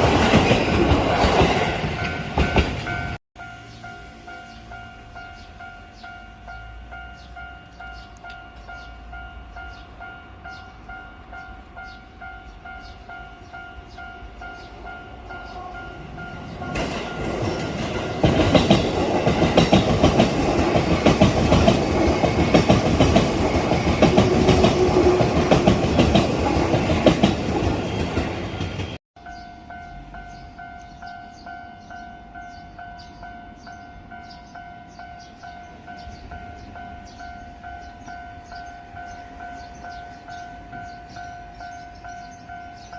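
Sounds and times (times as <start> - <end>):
train wheels clattering on rails: 0.0 - 3.2, 15.4 - 30.4.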